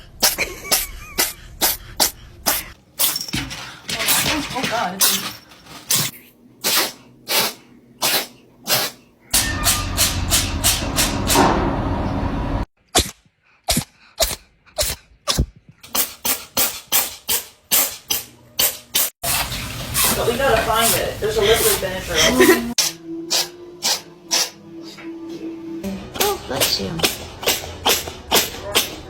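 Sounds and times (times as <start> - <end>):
cat sneezing: 6.6 - 9.0, 21.6 - 24.6.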